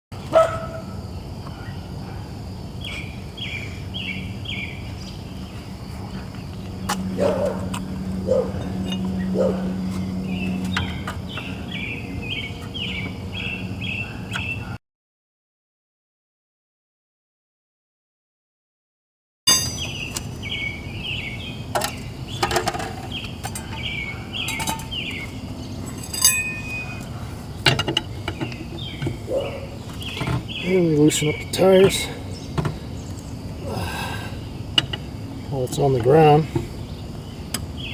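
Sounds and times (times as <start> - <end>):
outdoor background noise: 0.1 - 14.8, 19.5 - 37.9
sharp clinks: 19.5 - 20.2, 25.8 - 27.1.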